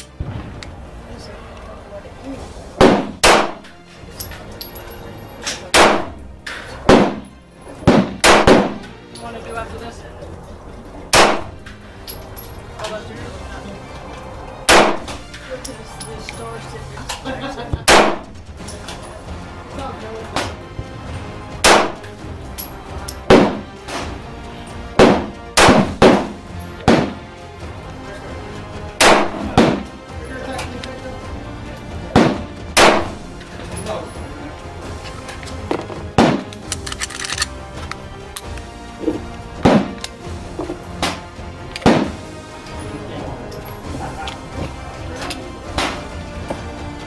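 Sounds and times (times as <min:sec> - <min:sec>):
sharp bangs with ringing tail: 0:02.8 - 0:03.6, 0:05.8 - 0:08.8, 0:11.2 - 0:11.6, 0:17.9 - 0:18.3, 0:21.6 - 0:22.0, 0:29.0 - 0:29.8, 0:32.2 - 0:33.2.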